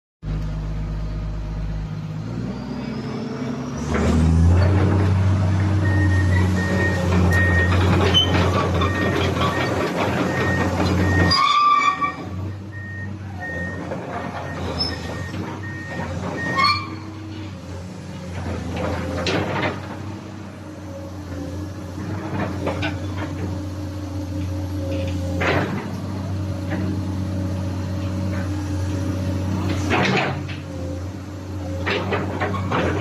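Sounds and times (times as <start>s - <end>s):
excavator diesel engine running: 0.2s - 33.0s
short electronic beeps: 5.8s - 7.7s.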